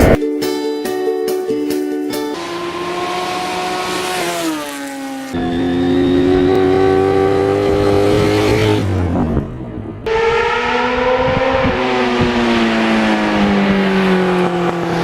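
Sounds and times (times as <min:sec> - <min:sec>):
motorcycle engine running: 0:02.3 - 0:10.0.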